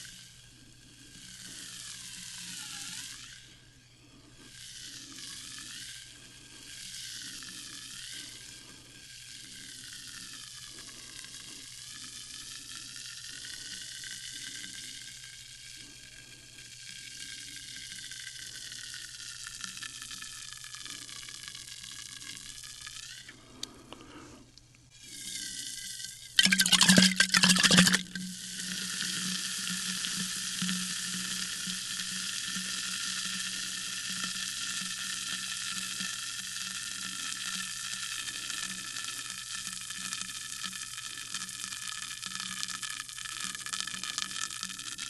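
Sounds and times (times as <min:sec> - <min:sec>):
sparkling water fizzing: 0:26.4 - 0:28.2.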